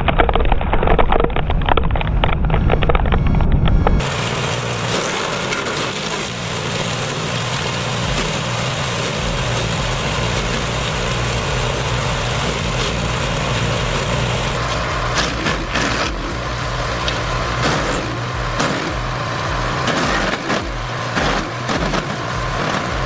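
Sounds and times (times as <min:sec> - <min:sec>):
deep engine hum: 0:00.0 - 0:23.0
engine-driven machine running: 0:00.0 - 0:23.0.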